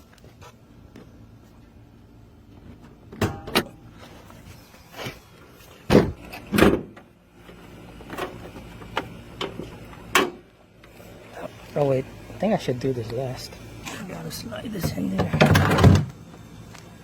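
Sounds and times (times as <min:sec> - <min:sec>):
car door clunks: 0:05.9 - 0:07.0.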